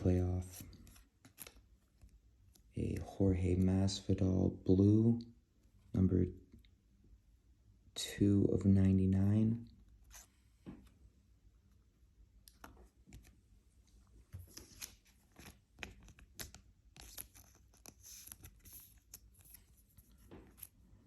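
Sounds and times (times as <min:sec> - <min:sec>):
cards sliding and rustling: 0:00.0 - 0:02.2, 0:10.0 - 0:11.0, 0:14.3 - 0:21.0.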